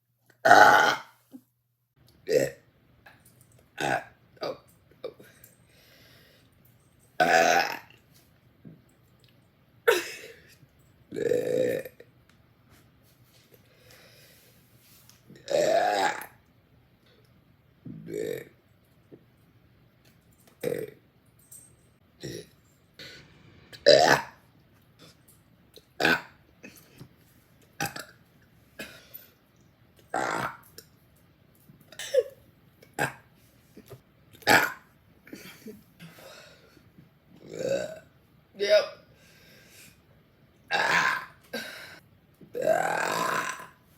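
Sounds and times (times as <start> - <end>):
woman burping loudly: 0.4 - 1.2, 2.2 - 2.6, 3.8 - 5.2, 7.2 - 8.0, 9.9 - 10.4, 11.1 - 12.1, 15.4 - 16.4, 17.9 - 18.6, 20.6 - 21.0, 22.2 - 22.5, 23.8 - 24.4, 26.0 - 26.9, 27.8 - 28.2, 30.1 - 30.8, 34.4 - 36.2, 37.4 - 39.0, 40.7 - 41.9, 42.5 - 43.8.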